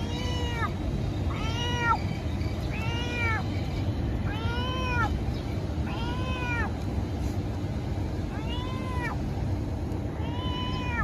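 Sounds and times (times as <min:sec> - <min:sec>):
cat meowing: 0:00.0 - 0:02.0, 0:02.7 - 0:03.5, 0:04.2 - 0:05.1, 0:05.8 - 0:06.7, 0:08.3 - 0:09.2, 0:10.1 - 0:11.0
low background rumble: 0:00.0 - 0:11.0.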